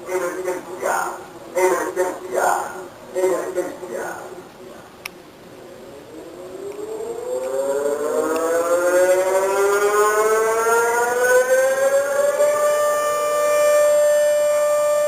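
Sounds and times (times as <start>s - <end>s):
civil defense siren winding up: 5.8s - 15.0s.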